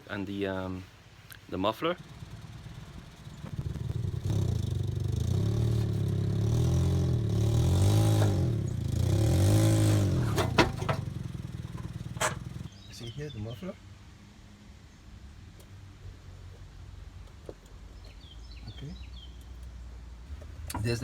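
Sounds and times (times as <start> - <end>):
car engine revving: 2.0 - 12.7.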